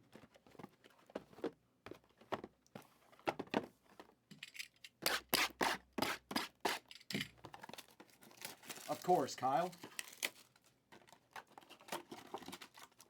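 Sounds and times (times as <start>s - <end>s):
plastic wrap being torn: 7.7s - 10.7s.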